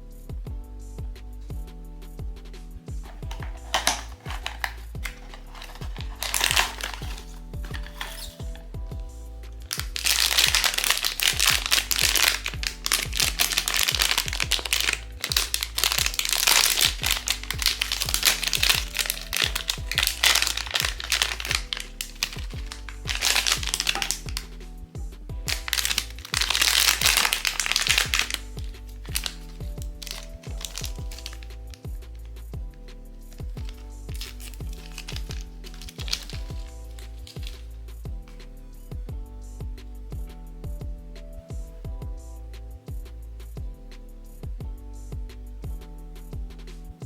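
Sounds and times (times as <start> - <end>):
background music: 0.0 - 47.0
packaging crinkling and rustling: 3.0 - 8.6, 9.7 - 24.5, 25.5 - 31.8, 33.4 - 37.7.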